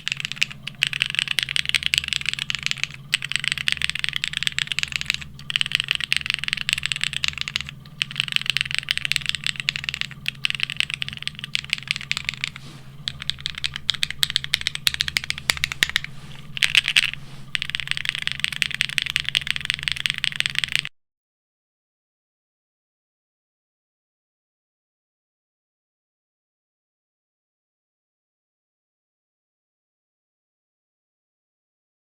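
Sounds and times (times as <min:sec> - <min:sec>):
fast typing on mechanical keyboard: 0:00.0 - 0:20.9.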